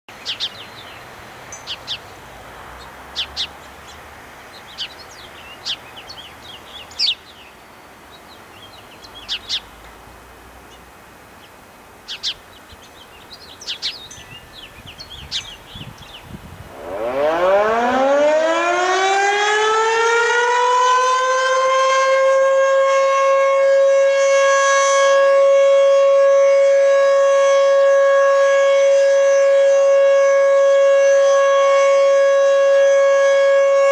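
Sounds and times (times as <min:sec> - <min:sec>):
birds chirping: 0:00.1 - 0:10.0, 0:10.6 - 0:21.5
warning siren: 0:16.3 - 0:33.9.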